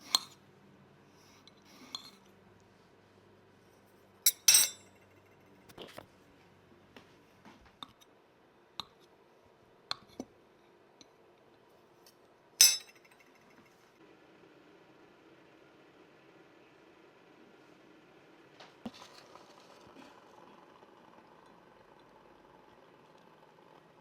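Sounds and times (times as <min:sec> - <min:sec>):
glassware and dishes clinking: 0:04.3 - 0:04.9, 0:12.6 - 0:13.2.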